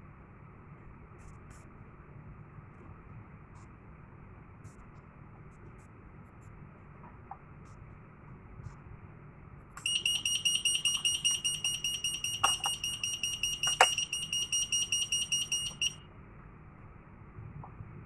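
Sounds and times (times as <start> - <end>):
fire alarm pulsing tone: 9.8 - 16.0
sharp clicks: 9.8 - 16.0.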